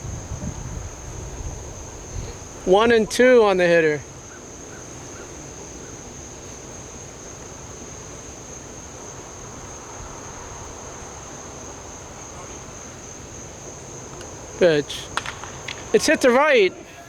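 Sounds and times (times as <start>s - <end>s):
low wind-like rumble: 0.0s - 3.4s
insects trilling: 0.0s - 17.0s.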